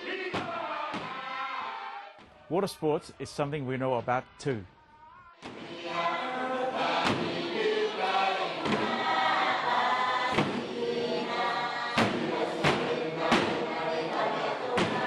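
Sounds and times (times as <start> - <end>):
choir singing: 0.0 - 2.2, 5.4 - 15.0.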